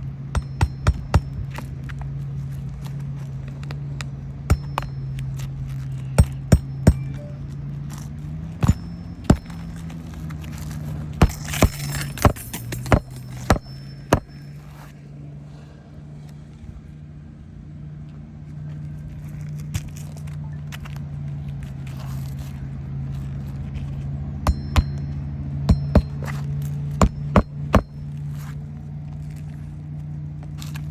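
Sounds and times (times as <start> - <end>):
low engine hum: 0.0 - 30.9
hammer striking roofing nails: 0.3 - 1.6, 4.5 - 5.4, 6.0 - 7.2, 11.2 - 14.4, 24.5 - 28.0.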